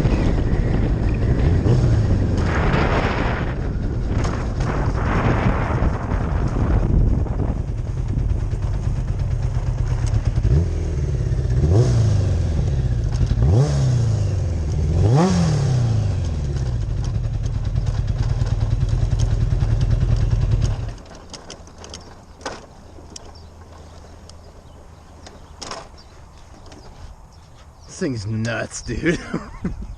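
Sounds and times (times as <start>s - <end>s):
motorcycle engine revving: 0.0s - 24.0s.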